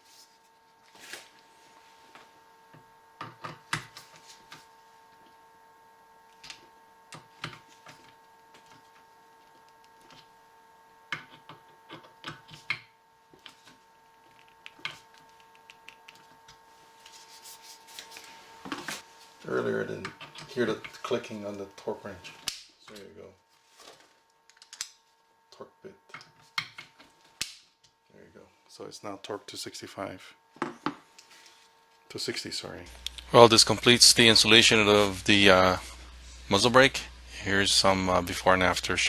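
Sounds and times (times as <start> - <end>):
faint steady hum: 0.0 - 39.0.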